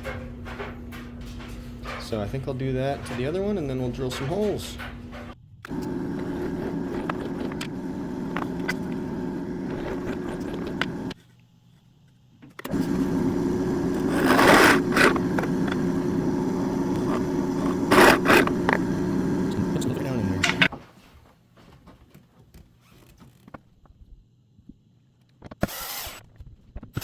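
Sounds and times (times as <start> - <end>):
drill bit scraping rasps: 5.7 - 11.2, 12.7 - 20.7
electric drill boring into wood: 5.7 - 11.2, 12.7 - 20.7.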